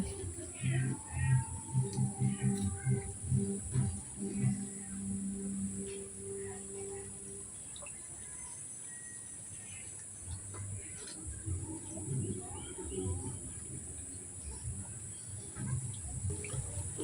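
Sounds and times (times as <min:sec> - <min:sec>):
small birds chirping: 0:00.0 - 0:17.0.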